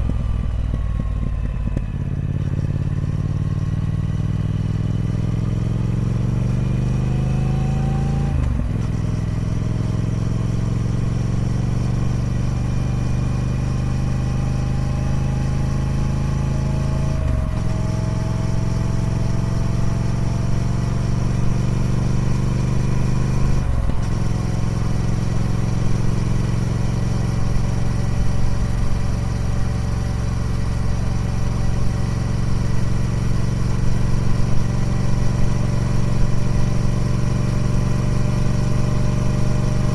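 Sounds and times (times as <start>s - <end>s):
motorcycle engine shifting gears: 0.0s - 39.9s.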